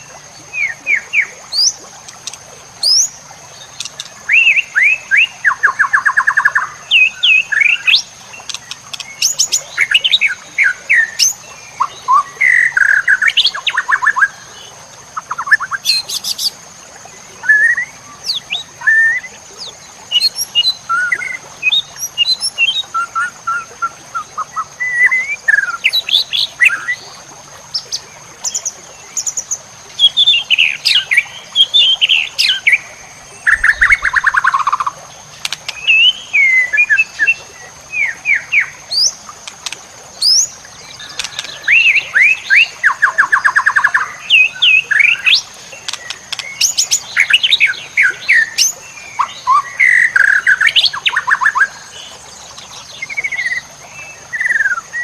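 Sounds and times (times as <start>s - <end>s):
bird singing whistled song: 15.2s - 16.5s, 17.4s - 27.0s, 33.4s - 34.9s, 35.8s - 39.2s.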